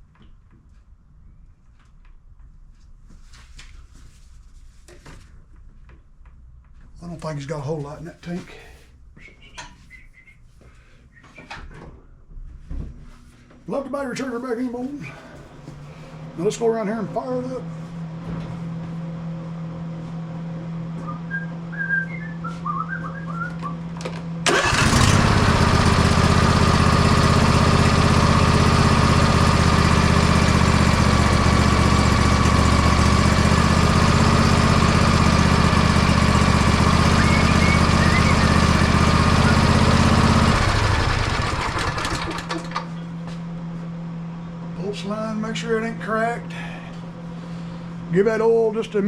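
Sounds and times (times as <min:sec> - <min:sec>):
riding mower engine running: 0:24.0 - 0:43.6.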